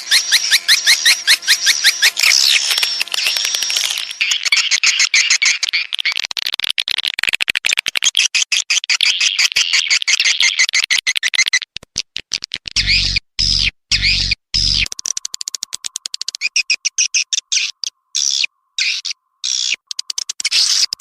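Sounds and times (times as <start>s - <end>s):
swiftlet chirps and clicks: 0.0s - 6.2s, 12.8s - 17.9s, 19.5s - 21.0s.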